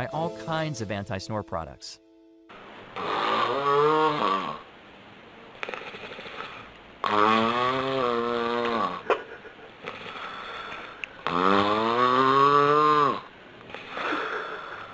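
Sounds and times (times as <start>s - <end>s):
person snoring: 3.0s - 4.7s, 5.6s - 9.1s, 9.8s - 14.9s
breathy exhales: 5.6s - 8.1s, 9.8s - 12.0s, 12.6s - 14.9s.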